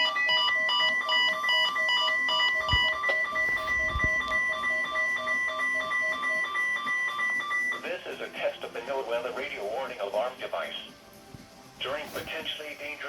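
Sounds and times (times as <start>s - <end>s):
steady warning alarm tone: 0.0s - 7.9s
rapid stepped beeps: 0.8s - 7.8s.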